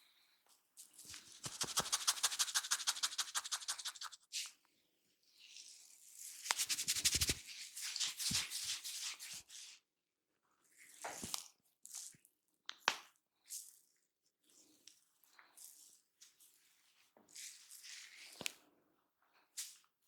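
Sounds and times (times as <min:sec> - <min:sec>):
scratching hair on scalp: 0:01.0 - 0:04.3, 0:06.2 - 0:09.2.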